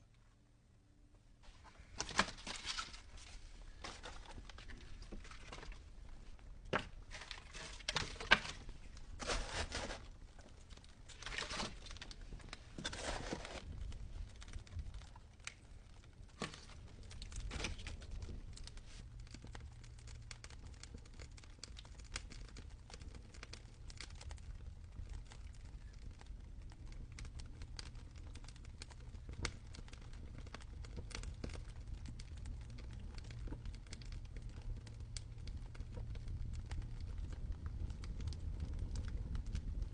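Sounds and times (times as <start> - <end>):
leaves crumpled by hand: 6.7 - 15.6.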